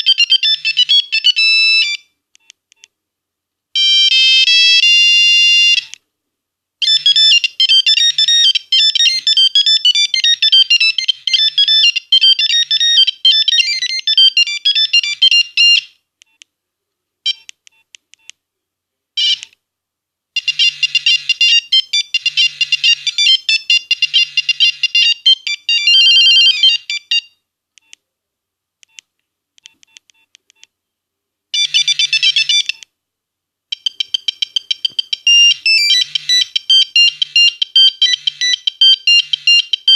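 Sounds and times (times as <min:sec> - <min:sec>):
monophonic phone ringtone beeps: 0:06.8 - 0:15.9, 0:20.4 - 0:27.4, 0:31.6 - 0:32.8, 0:33.7 - 0:39.9.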